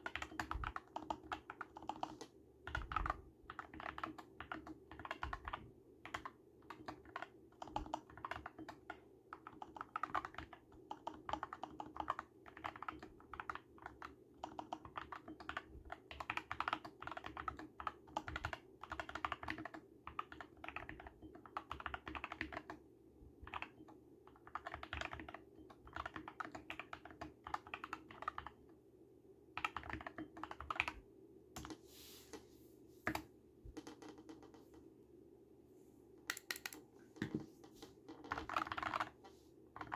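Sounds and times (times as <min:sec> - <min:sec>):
mechanical keyboard typing: 0:00.0 - 0:22.8, 0:23.4 - 0:28.6, 0:29.6 - 0:31.0, 0:33.8 - 0:34.8, 0:36.3 - 0:36.8, 0:38.1 - 0:39.2.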